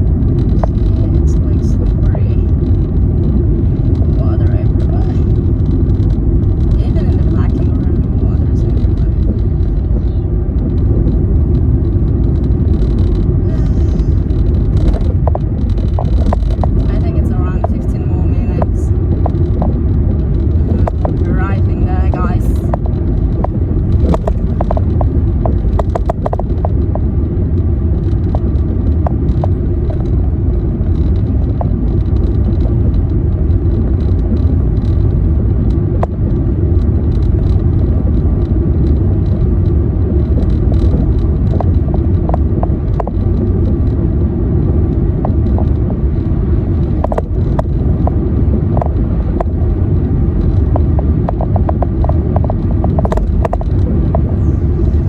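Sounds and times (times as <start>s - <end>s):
car road rumble: 0.0s - 55.0s
light clicks and ticks: 0.3s - 27.1s, 27.9s - 55.0s.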